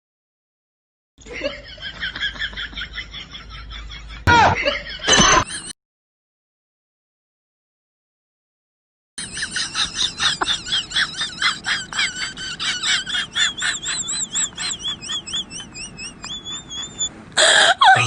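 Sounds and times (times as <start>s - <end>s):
comedy rapid high chirps: 9.2s - 18.0s.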